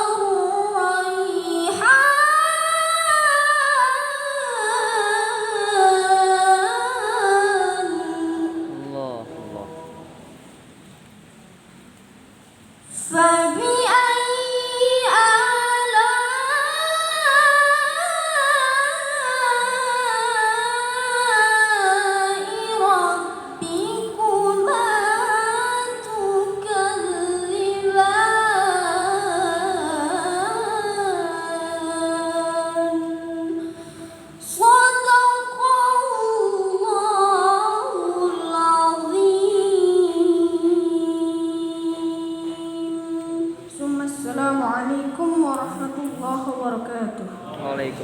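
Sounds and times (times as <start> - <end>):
person chanting melodic recitation: 4.8 - 10.5, 13.2 - 33.8.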